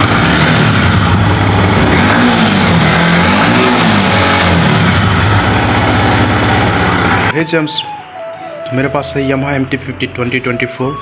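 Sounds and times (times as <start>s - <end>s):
motorcycle engine idling: 0.0s - 7.3s.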